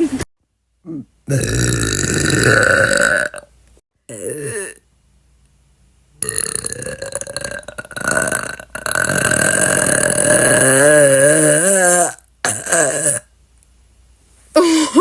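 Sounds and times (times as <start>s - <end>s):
woman burping: 0.8s - 3.4s, 4.1s - 4.8s, 6.2s - 13.3s.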